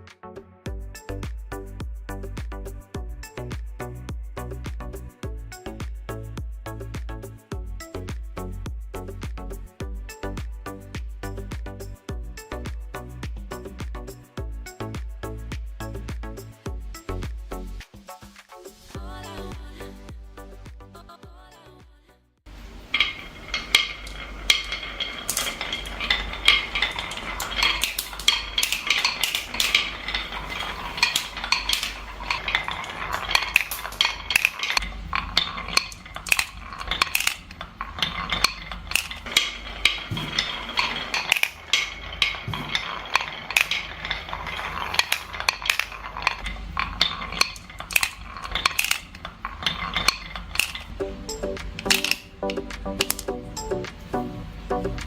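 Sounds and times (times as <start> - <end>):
glass marbles clattering: 22.5 - 53.8
low rolling rumble: 22.5 - 55.0.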